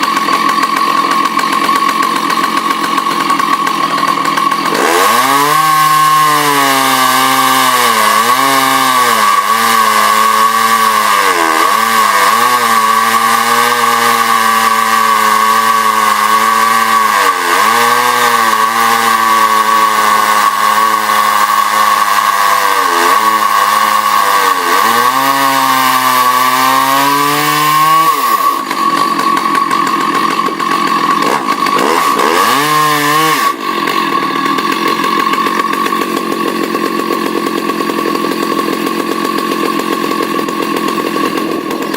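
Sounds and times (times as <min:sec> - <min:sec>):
chainsaw cutting under load: 0:00.0 - 0:41.9.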